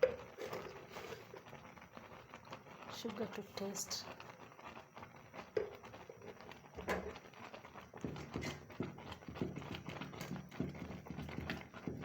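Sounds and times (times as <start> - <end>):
spoon stirring porridge: 5.4 - 12.0.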